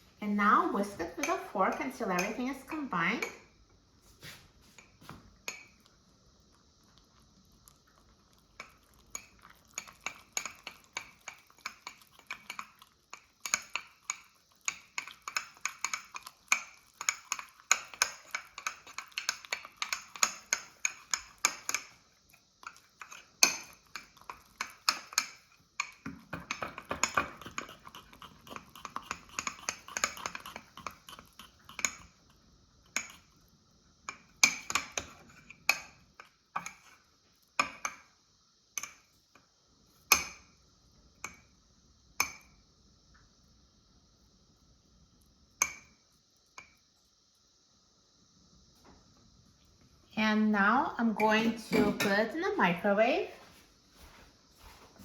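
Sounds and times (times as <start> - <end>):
fork whisking batter in mug: 0.4 - 3.4, 4.8 - 38.1.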